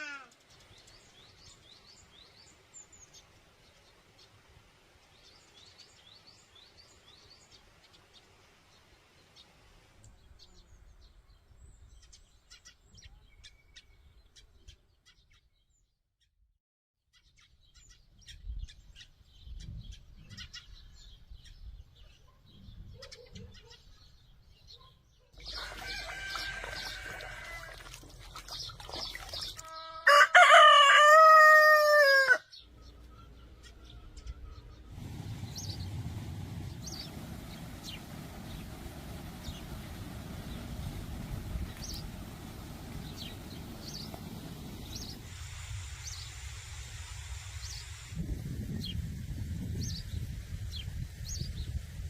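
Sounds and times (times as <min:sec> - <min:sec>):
small birds chirping: 0:00.0 - 0:04.4, 0:17.1 - 0:30.0, 0:32.5 - 0:52.0
rooster crowing: 0:25.5 - 0:28.0, 0:29.8 - 0:32.5.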